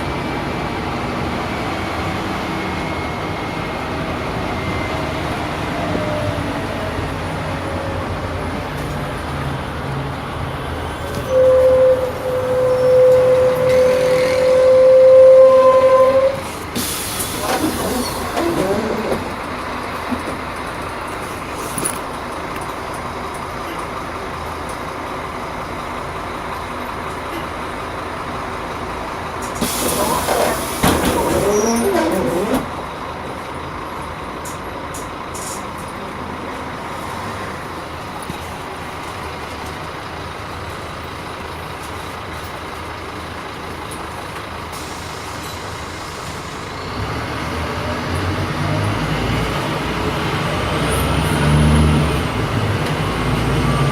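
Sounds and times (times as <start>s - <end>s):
city bus engine running: 0.0s - 53.9s
wavering squeal: 11.2s - 16.5s, 31.2s - 32.7s.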